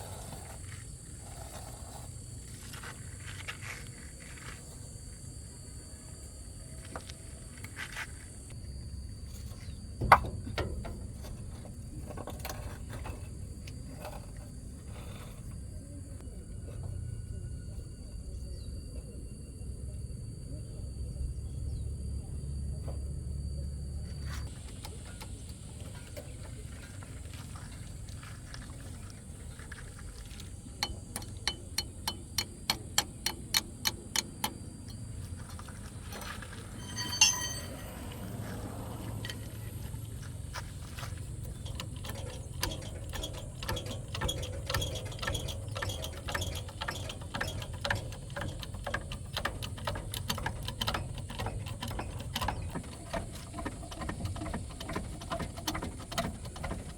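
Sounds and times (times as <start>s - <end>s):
ratchet clicking: 30.8s - 35.0s, 41.5s - 56.9s
loud ringing metal clang: 36.8s - 38.2s.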